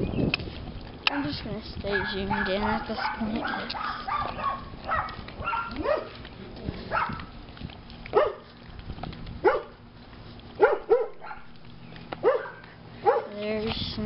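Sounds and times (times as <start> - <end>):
dog barking: 1.9 - 6.2, 6.9 - 7.2, 8.1 - 8.5, 9.4 - 9.8, 10.6 - 11.5, 12.2 - 13.4.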